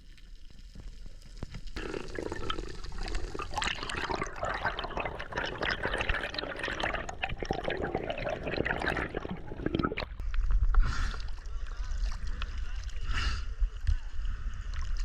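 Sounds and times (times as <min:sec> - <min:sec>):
water rushing and bubbling: 0:01.8 - 0:10.3.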